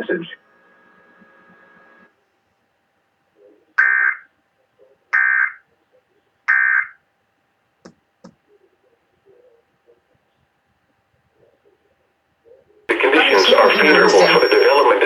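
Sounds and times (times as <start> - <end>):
buzzing data tone warbles: 12.9 - 15.0.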